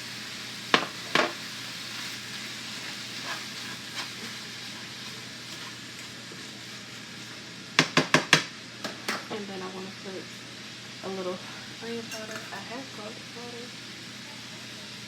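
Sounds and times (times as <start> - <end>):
meat sizzling in a pan: 0.0 - 15.0
utensil knocking on pan: 0.7 - 1.4, 7.8 - 9.2.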